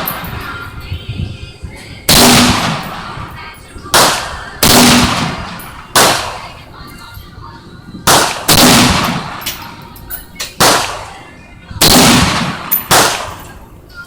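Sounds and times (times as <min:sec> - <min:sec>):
rifle shots with echo: 0:02.1 - 0:03.2, 0:03.9 - 0:06.6, 0:08.0 - 0:09.6, 0:10.6 - 0:11.2, 0:11.8 - 0:13.6.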